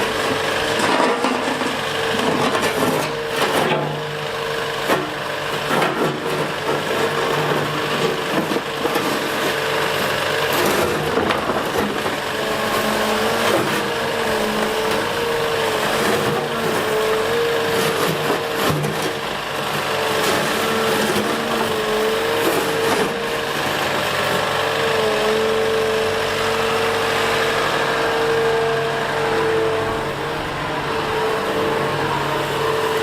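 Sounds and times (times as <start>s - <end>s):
diesel engine running: 0.0s - 33.0s
hydraulic whine: 0.0s - 33.0s.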